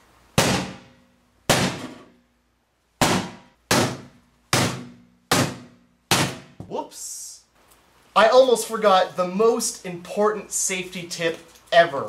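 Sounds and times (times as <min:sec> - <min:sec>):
hammer striking microwave oven: 0:00.4 - 0:00.9, 0:01.5 - 0:02.1, 0:03.0 - 0:06.6.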